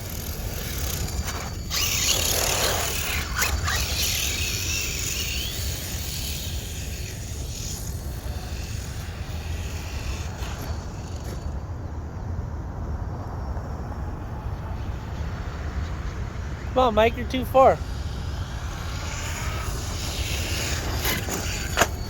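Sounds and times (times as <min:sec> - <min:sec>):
electric motor hiss and whine: 0:00.0 - 0:11.8, 0:14.3 - 0:22.0
wind rumble on microphone: 0:02.8 - 0:22.0.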